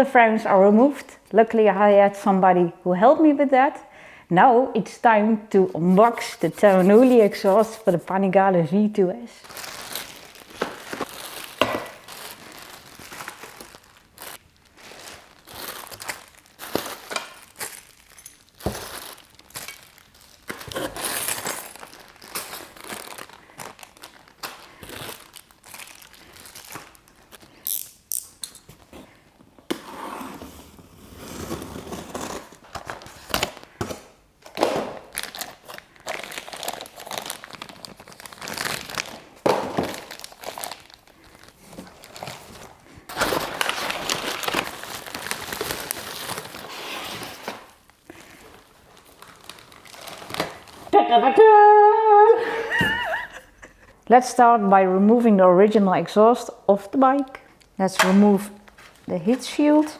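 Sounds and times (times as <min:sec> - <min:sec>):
packaging crinkling and rustling: 0:06.0 - 0:08.2, 0:09.4 - 0:29.6, 0:30.4 - 0:51.0, 0:58.6 - 0:59.9.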